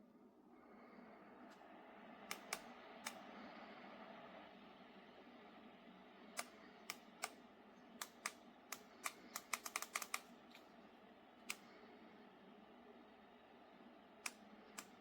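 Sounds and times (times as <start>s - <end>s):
faint steady hum: 0.0s - 15.0s
sharp irregular clicks: 2.3s - 3.2s, 6.3s - 7.4s, 8.0s - 10.7s, 11.4s - 11.8s, 14.2s - 15.0s.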